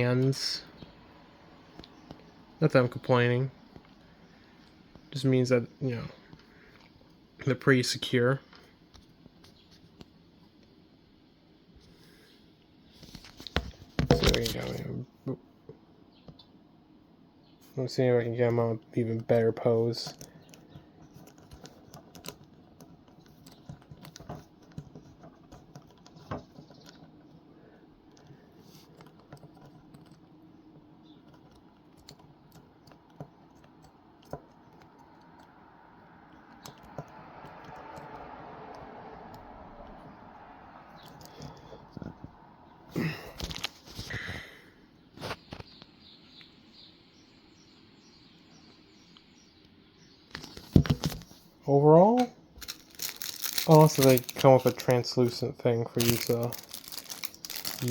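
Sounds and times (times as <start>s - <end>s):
plastic figure rustling: 19.2s - 27.5s, 50.3s - 57.9s.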